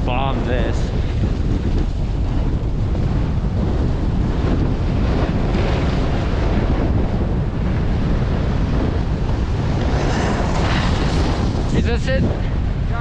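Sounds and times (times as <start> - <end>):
gusting wind buffeting microphone: 0.0 - 13.0.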